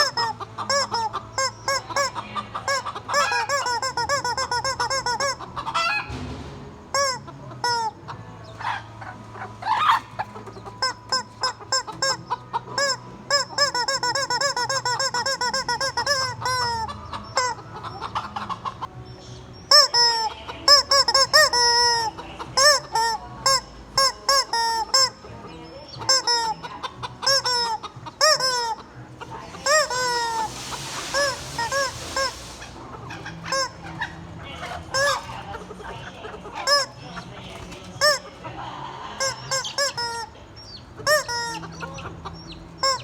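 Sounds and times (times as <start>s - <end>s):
squeaky chicken toy squawking: 0.0s - 6.2s, 6.9s - 18.9s, 19.7s - 43.0s
breathy hissing: 29.6s - 33.8s.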